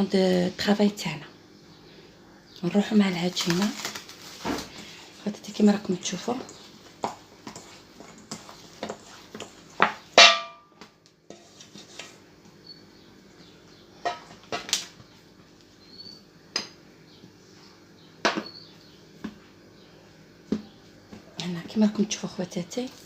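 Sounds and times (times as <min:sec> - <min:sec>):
dishes and utensils clattering: 0:14.0 - 0:14.7.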